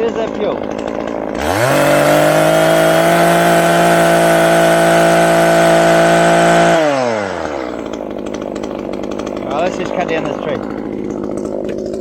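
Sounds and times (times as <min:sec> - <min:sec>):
chainsaw revving: 0:00.0 - 0:12.0.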